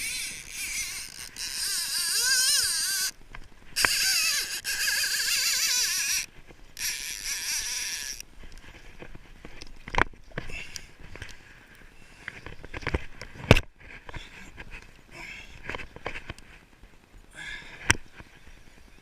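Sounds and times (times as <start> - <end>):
fishing reel drag buzzing: 0.0 - 3.2, 3.8 - 8.2.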